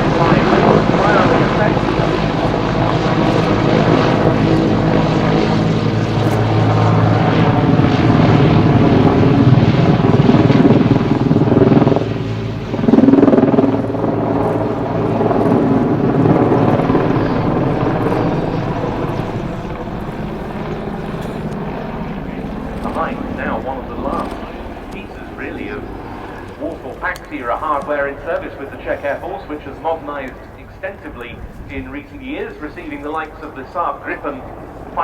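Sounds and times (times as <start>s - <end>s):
helicopter flying past: 0.0s - 35.0s.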